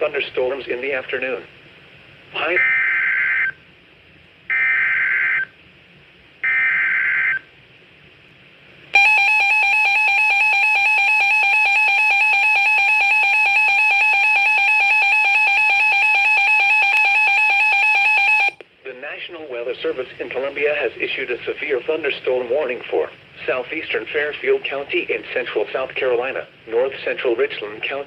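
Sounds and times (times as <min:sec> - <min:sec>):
two-tone attention signal: 0:09.0 - 0:18.6.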